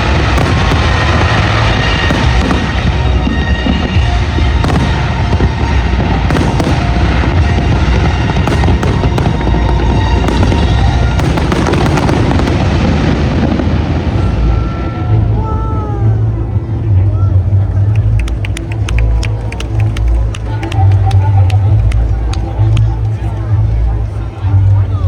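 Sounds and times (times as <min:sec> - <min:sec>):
fireworks cracks and bangs: 0:00.0 - 0:14.4
fireworks crackling: 0:00.0 - 0:14.9
low rumble: 0:00.0 - 0:25.0.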